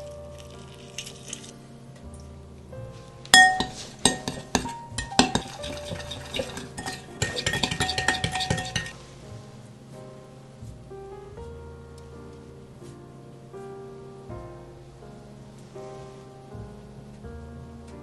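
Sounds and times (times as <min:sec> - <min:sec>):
soft background music: 0:00.0 - 0:18.0
utensil stirring in mixing bowl: 0:03.4 - 0:09.0.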